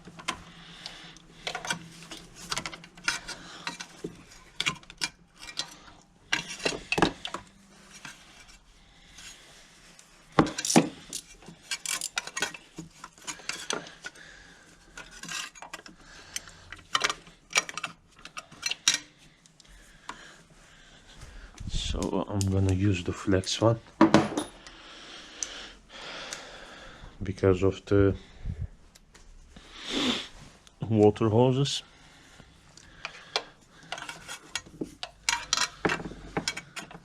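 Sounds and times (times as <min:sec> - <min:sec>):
metal tools clinking: 0:01.4 - 0:08.2, 0:10.4 - 0:14.2, 0:14.9 - 0:19.1, 0:23.3 - 0:24.7, 0:33.0 - 0:37.0.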